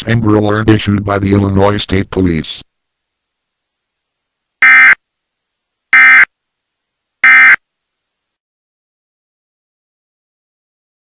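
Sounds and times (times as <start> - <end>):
data tone bursts: 4.6 - 5.0, 5.9 - 6.3, 7.2 - 7.6.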